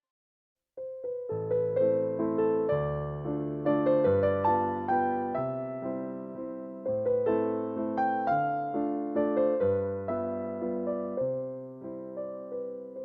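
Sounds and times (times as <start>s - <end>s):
gentle electric piano melody: 0.8s - 13.0s.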